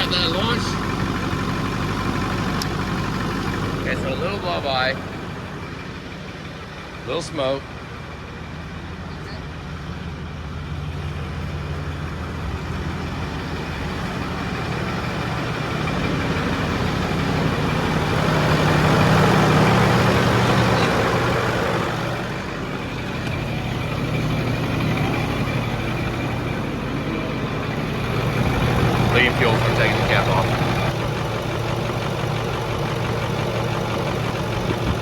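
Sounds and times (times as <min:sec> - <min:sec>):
diesel engine idling: 0:00.0 - 0:35.0.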